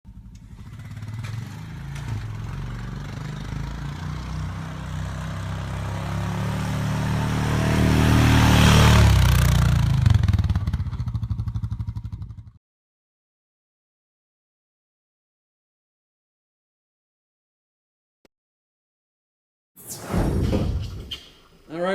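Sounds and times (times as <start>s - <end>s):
atv engine under load: 0.1s - 12.6s.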